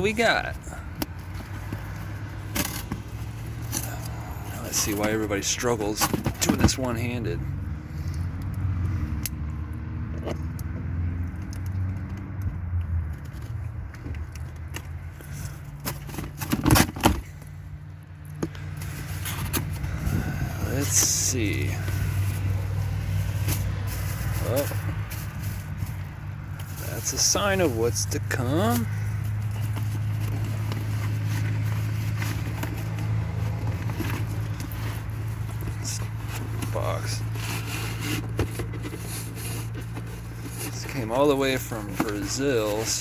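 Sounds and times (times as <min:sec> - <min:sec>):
ripping or scraping: 0:18.4 - 0:43.0
cardboard box being opened: 0:18.5 - 0:43.0.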